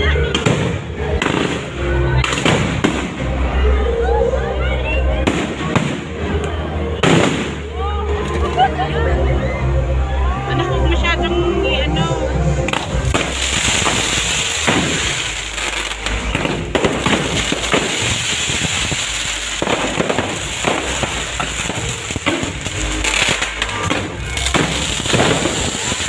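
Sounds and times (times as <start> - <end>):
fireworks crackling and banging: 0.1 - 3.6, 5.2 - 8.7, 12.6 - 26.0.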